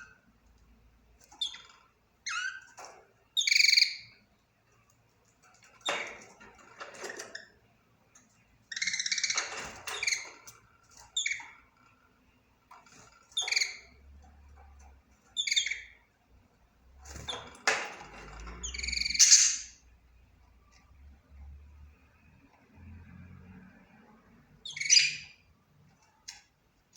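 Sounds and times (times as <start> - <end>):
budgerigar chirping and chattering: 18.7 - 19.8.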